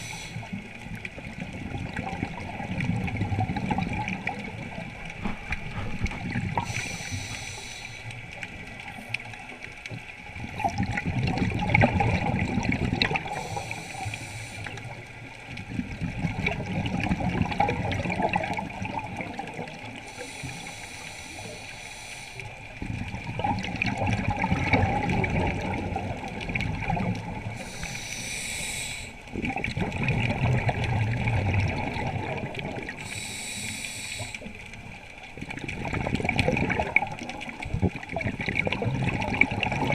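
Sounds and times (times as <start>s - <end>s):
regulator inhale hiss: 0.0s - 0.6s, 6.6s - 8.2s, 13.3s - 15.0s, 20.0s - 22.7s, 27.5s - 29.3s, 33.0s - 34.6s
exhaled bubbles burbling: 0.0s - 7.0s, 10.3s - 14.0s, 14.6s - 20.1s, 22.8s - 27.9s, 29.3s - 33.1s, 34.8s - 39.9s.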